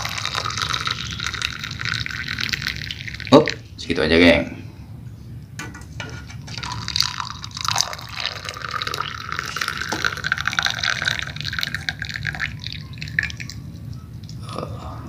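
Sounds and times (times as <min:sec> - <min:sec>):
drink pouring into glass: 0:00.0 - 0:03.8, 0:06.4 - 0:14.4.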